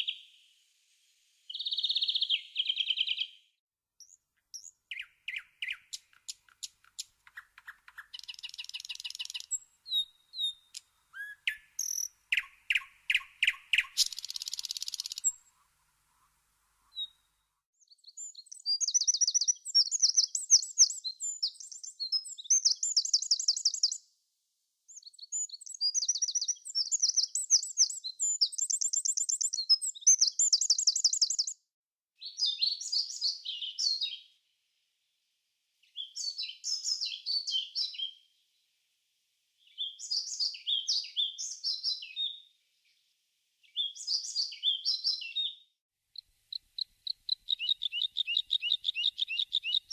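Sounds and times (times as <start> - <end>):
songbird trills: 1.5 - 3.4, 4.0 - 17.3, 17.9 - 24.0, 24.9 - 31.6, 43.6 - 45.6, 46.2 - 49.9.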